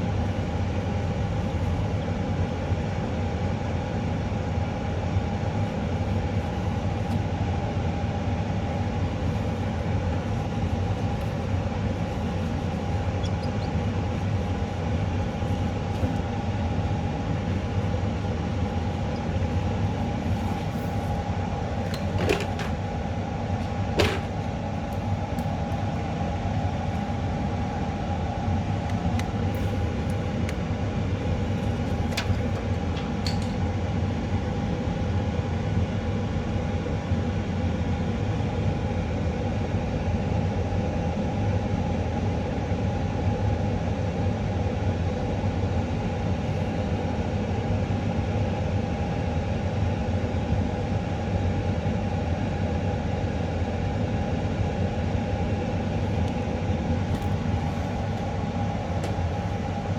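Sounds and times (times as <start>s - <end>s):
steady machine hum: 0.0s - 35.7s, 52.4s - 59.9s.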